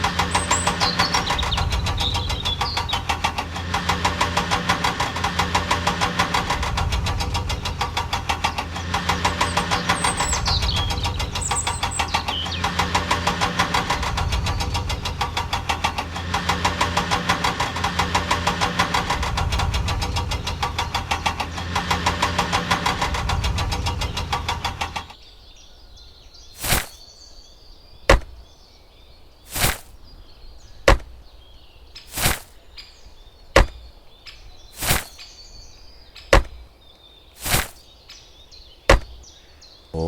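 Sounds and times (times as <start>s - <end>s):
engine chugging: 0.0s - 25.2s
sharp knocks: 0.0s - 25.2s, 28.1s - 28.4s, 30.9s - 31.2s, 33.6s - 33.9s, 36.3s - 36.7s, 38.9s - 39.2s
faint bird chirps: 0.2s - 3.2s, 9.2s - 12.8s.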